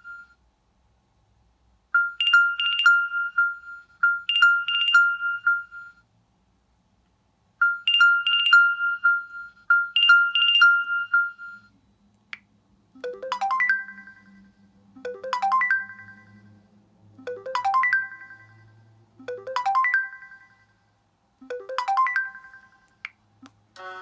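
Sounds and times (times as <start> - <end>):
bell-like electronic ringtone: 2.0 - 6.0, 7.7 - 11.7, 13.0 - 23.0.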